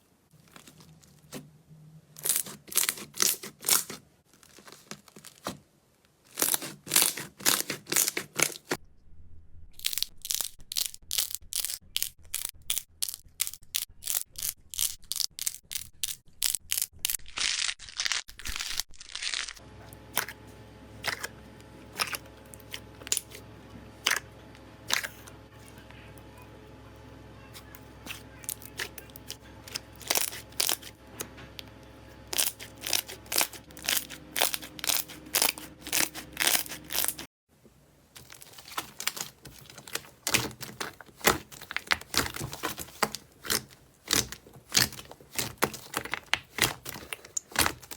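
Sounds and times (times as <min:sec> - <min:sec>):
slime squishes: 0:00.0 - 0:01.6, 0:02.2 - 0:05.6, 0:06.3 - 0:08.8, 0:09.8 - 0:20.4, 0:21.0 - 0:26.4, 0:27.5 - 0:37.3, 0:38.0 - 0:47.9
slime clicking and crackling: 0:02.2 - 0:05.6, 0:06.3 - 0:08.8, 0:09.8 - 0:19.6, 0:28.0 - 0:30.9, 0:32.3 - 0:37.2, 0:38.2 - 0:47.9.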